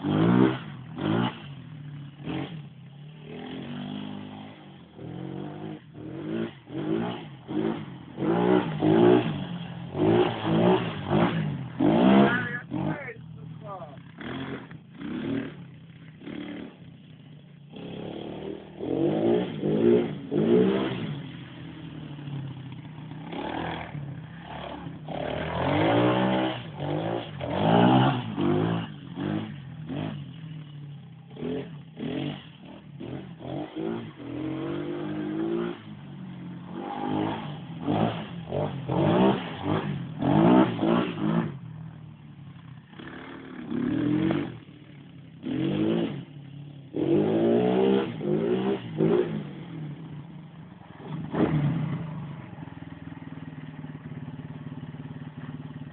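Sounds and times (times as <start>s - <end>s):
quad bike engine revving: 0.0s - 55.9s.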